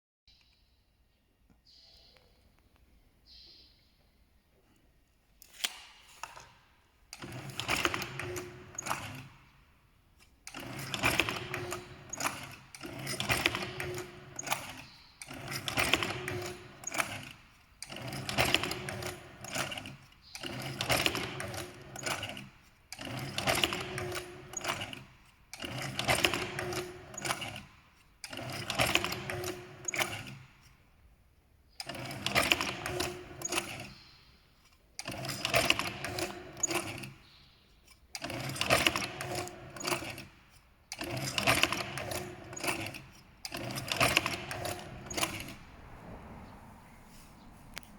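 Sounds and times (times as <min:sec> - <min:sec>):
mechanical clatter: 0:05.4 - 0:30.8, 0:31.7 - 0:47.9
dumpling machine motor whirring: 0:05.6 - 0:30.8, 0:31.8 - 0:34.1, 0:35.0 - 0:37.3, 0:38.1 - 0:46.6.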